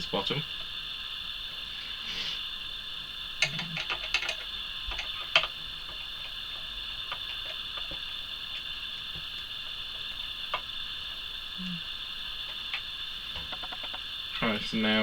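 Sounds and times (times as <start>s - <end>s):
screwdriver clicking on plastic: 3.4s - 5.6s
high-pitched whine: 7.8s - 15.0s.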